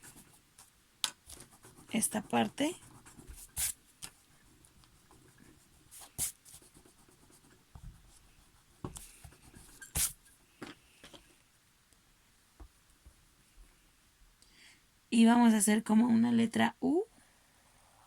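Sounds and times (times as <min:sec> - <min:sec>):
scratchy strokes on paper: 0:01.3 - 0:10.2.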